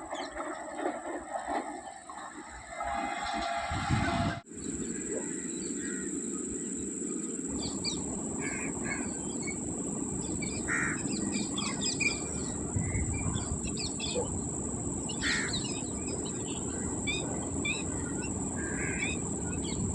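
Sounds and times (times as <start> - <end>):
high-pitched whine: 0.0 - 19.9
steady low rumble: 0.0 - 19.9
birds chirping and calling: 4.6 - 19.9.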